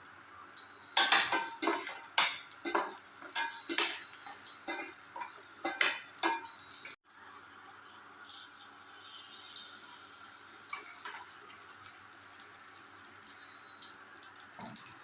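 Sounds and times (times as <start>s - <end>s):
metal utensil scraping a cooking pan: 1.0s - 7.0s.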